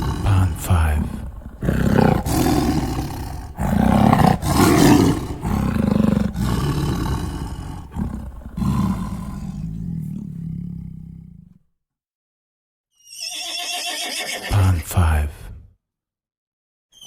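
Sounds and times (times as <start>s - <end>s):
big cat roaring: 0.0s - 11.5s.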